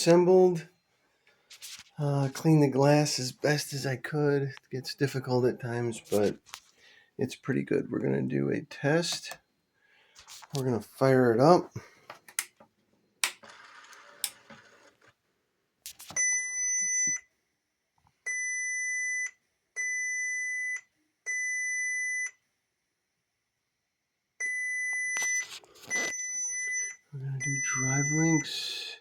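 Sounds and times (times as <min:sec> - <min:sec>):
clicks: 0:12.1 - 0:14.9
high-pitched warning buzzer beeps: 0:24.4 - 0:28.9.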